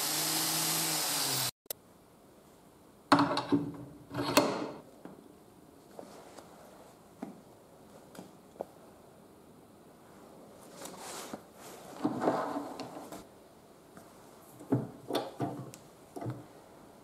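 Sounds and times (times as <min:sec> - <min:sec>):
sharp knocks and clunks: 0:14.6 - 0:16.4.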